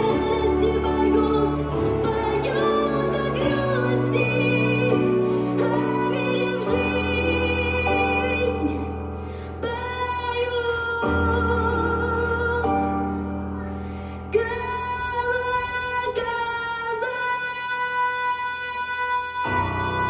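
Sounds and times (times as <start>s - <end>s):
woman singing: 0.0s - 20.0s.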